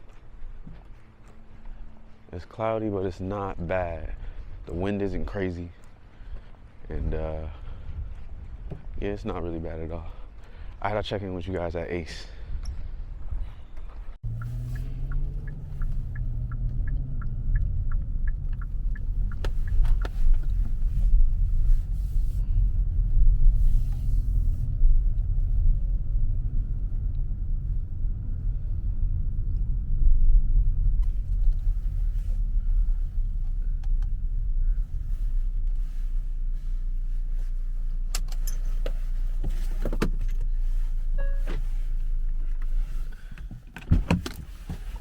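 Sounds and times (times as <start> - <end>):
car road and engine rumble: 0.0 - 45.0.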